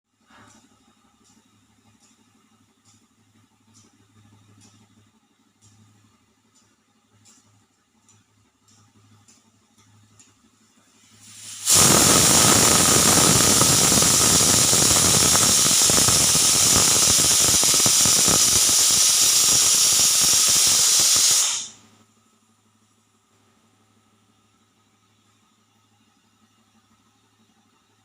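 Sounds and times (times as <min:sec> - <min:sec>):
pressure cooker whistle hissing steam: 0:11.2 - 0:21.9.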